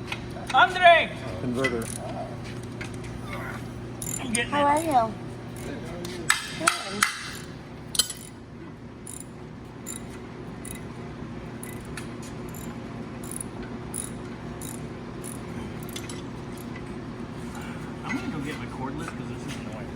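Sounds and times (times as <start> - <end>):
low workshop hum: 0.0 - 19.9
metallic clinks of tools: 4.0 - 4.3, 7.2 - 8.4, 12.5 - 16.8.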